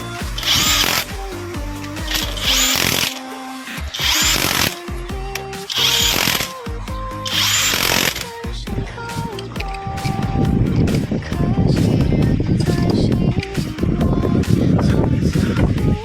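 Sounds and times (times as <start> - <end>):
loud hiss-like bursts: 0.0 - 4.9, 5.5 - 6.7, 7.3 - 8.5
background music: 0.0 - 16.0.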